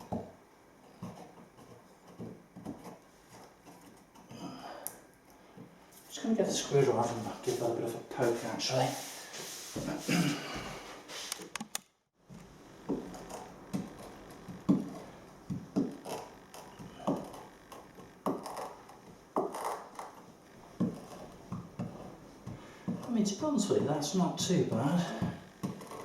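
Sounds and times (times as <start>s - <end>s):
screwdriver scraping wood: 25.1s - 26.0s.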